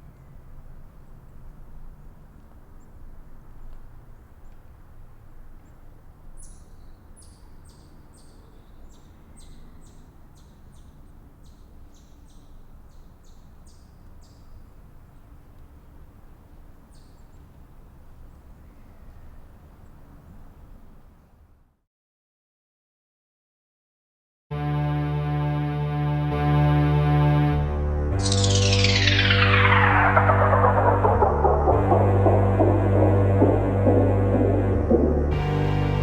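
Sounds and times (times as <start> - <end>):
small bird chirping: 28.2 - 31.7
steady low rumble: 28.2 - 36.0.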